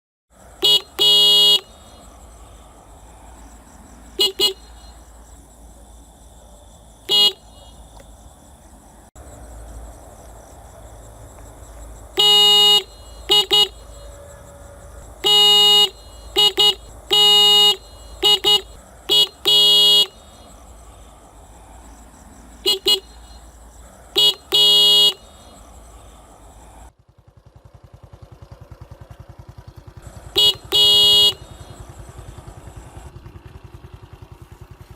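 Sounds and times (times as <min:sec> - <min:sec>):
motorcycle horn beeping: 0:00.6 - 0:02.1, 0:04.2 - 0:05.0, 0:07.0 - 0:07.8, 0:12.2 - 0:14.5, 0:15.1 - 0:20.6, 0:22.6 - 0:23.4, 0:24.1 - 0:25.6, 0:30.2 - 0:32.3.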